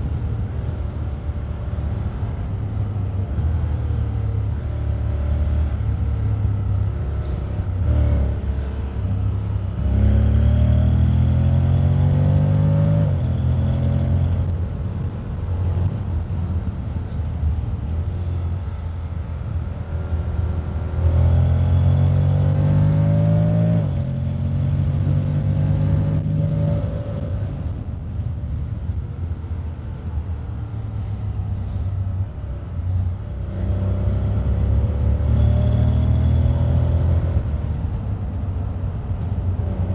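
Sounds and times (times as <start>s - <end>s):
motorcycle engine accelerating: 2.0s - 16.5s, 19.7s - 27.9s.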